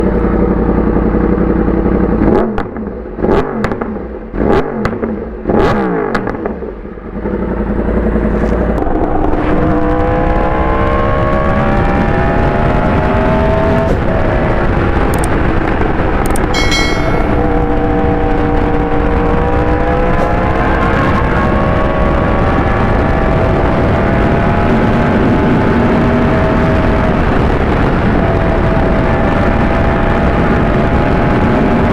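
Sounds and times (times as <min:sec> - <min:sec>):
motorcycle engine revving: 0:00.0 - 0:31.9
exhaust pops and bangs: 0:02.3 - 0:05.2
gear change: 0:08.2 - 0:31.8.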